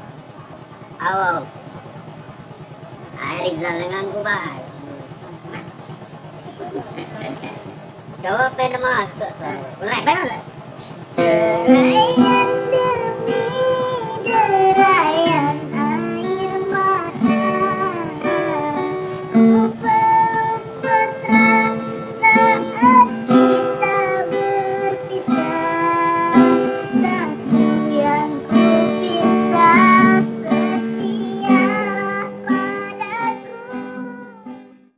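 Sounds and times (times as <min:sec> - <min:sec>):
strummed guitar: 0:00.0 - 0:34.9
person singing: 0:11.2 - 0:34.7.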